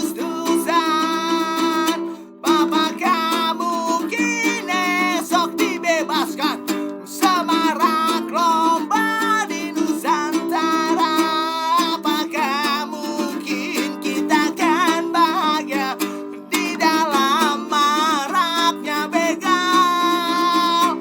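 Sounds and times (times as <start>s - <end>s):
plucked string accompaniment: 0.0s - 21.0s.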